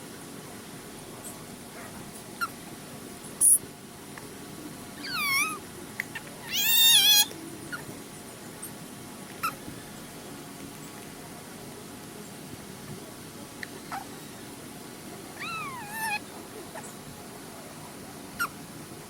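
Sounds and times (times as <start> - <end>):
cat meowing: 5.0 - 5.6, 6.4 - 7.3, 15.4 - 16.2.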